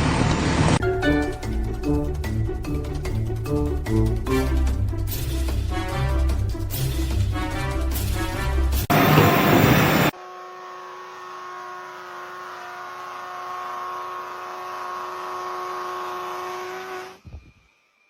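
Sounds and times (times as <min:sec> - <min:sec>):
loud rush of noise: 0:08.9 - 0:10.1
steady mechanical hum: 0:08.9 - 0:18.0.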